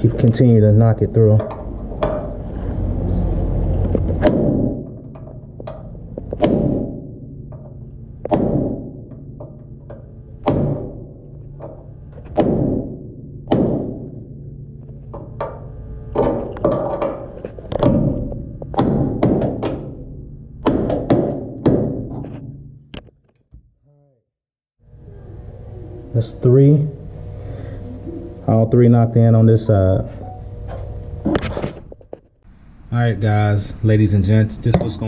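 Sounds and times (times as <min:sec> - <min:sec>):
hammer striking metal: 0:01.4 - 0:02.4, 0:04.2 - 0:15.6.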